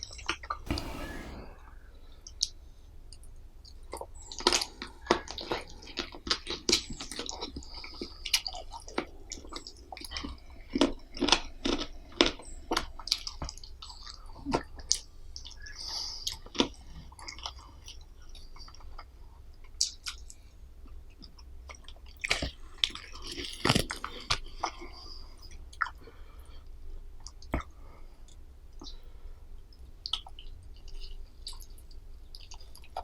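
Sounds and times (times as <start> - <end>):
person chewing food: 30.0 - 33.0.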